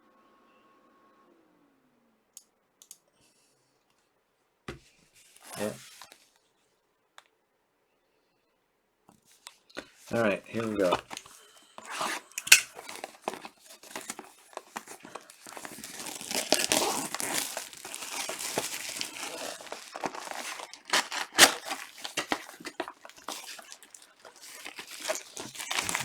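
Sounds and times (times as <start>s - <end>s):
plastic wrapping crinkling: 5.2s - 6.3s, 9.4s - 26.0s
plastic wrapping snapping: 10.6s - 26.0s.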